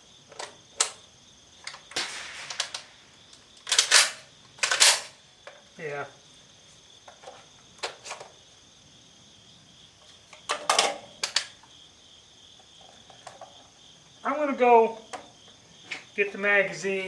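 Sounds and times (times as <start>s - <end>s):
crickets chirping: 0.0s - 17.0s
shotgun action clicking: 3.6s - 5.2s.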